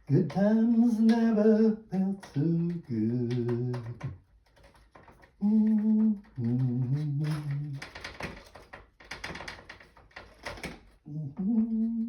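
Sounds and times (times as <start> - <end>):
man humming: 0.1 - 4.2, 5.4 - 7.8, 11.1 - 12.0.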